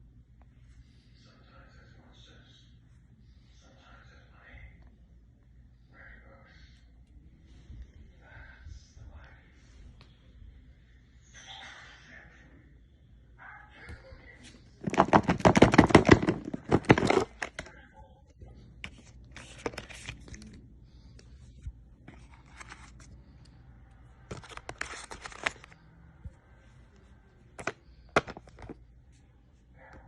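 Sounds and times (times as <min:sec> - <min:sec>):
packaging rustling and scraping: 0:14.8 - 0:17.7, 0:18.8 - 0:20.6, 0:22.0 - 0:23.2, 0:24.3 - 0:25.8, 0:27.6 - 0:28.8
packaging tearing and crinkling: 0:24.3 - 0:25.8.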